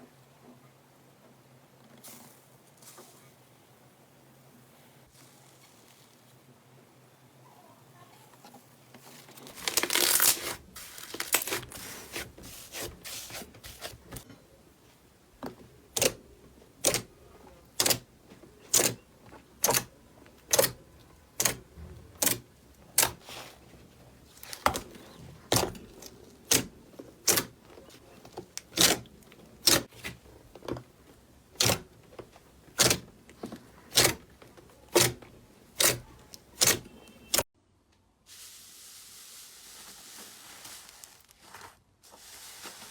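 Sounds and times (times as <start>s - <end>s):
slime squishing: 9.2s - 14.3s.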